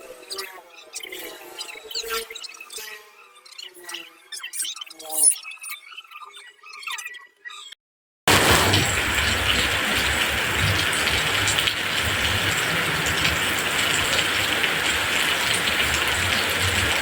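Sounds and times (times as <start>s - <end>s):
loud rushing noise with rumble: 8.3s - 14.6s.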